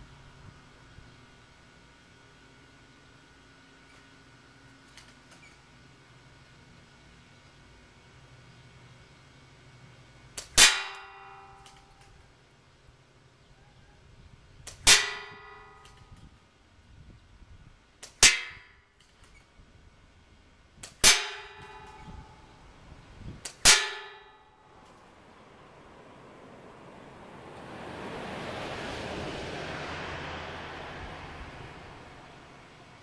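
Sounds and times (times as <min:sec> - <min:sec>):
bb hitting metal target: 0:21.0 - 0:22.3.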